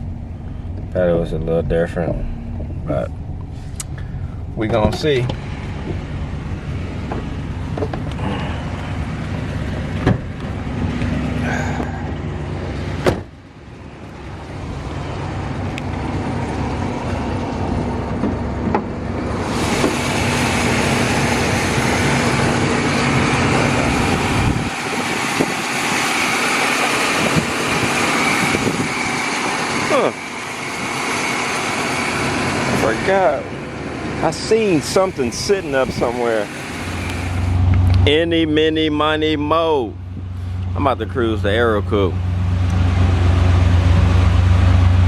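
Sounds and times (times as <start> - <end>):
car engine running: 0.0 - 45.0
road and wind noise: 0.0 - 45.0.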